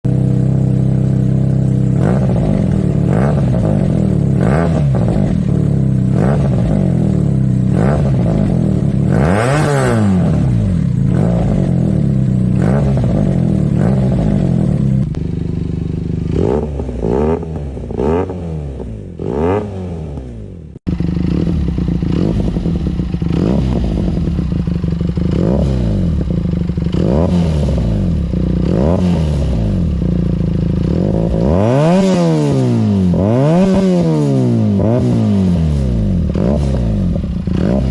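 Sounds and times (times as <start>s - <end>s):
motorcycle engine revving: 0.0s - 37.9s.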